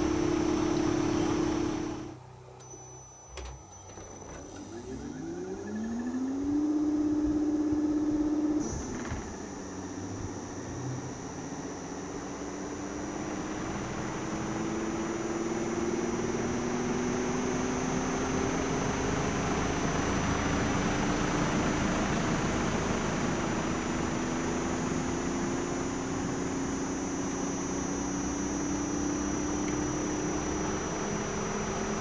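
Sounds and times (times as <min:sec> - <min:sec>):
thin high whine: 0:00.0 - 0:21.2
air conditioner compressor hum: 0:00.0 - 0:32.0.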